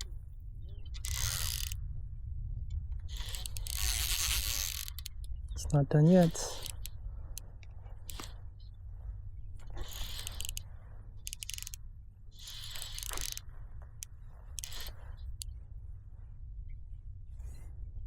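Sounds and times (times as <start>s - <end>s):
fishing reel whirring and clicking: 0.0s - 1.8s, 3.0s - 8.6s, 9.5s - 15.5s
low rumble: 0.0s - 9.8s.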